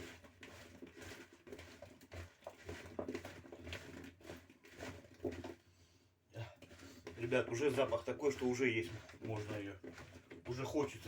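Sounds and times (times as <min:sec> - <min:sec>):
potatoes tossed with oil: 0:07.1 - 0:11.0.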